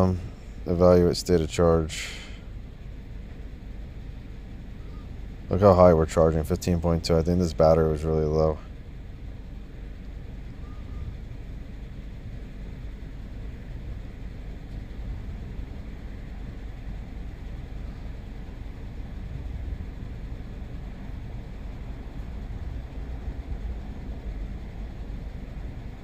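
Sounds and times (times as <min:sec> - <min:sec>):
car engine idling: 0:00.0 - 0:26.0.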